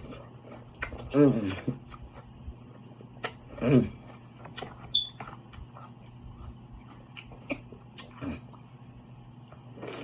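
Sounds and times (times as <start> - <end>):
quiet chewing: 0.0 - 8.8.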